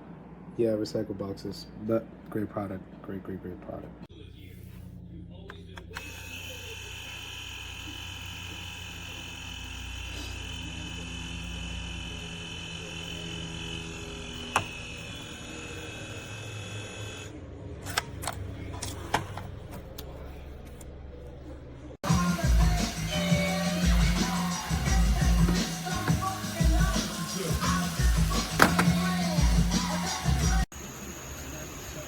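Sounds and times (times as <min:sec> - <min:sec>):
label maker motor whirring: 0:05.9 - 0:17.3, 0:22.0 - 0:32.0.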